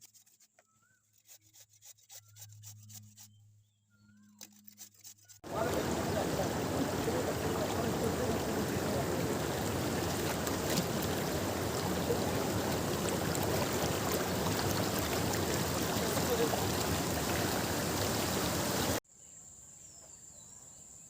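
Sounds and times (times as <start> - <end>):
papaya being grated: 0.0 - 3.4, 4.3 - 6.0.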